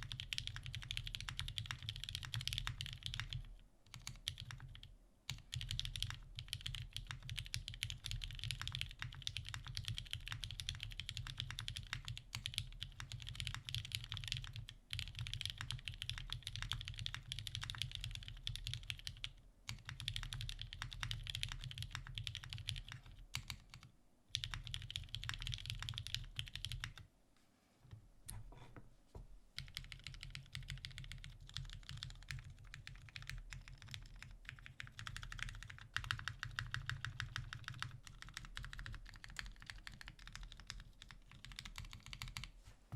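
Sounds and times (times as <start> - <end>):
mechanical keyboard typing: 0.0 - 27.0, 29.6 - 42.5.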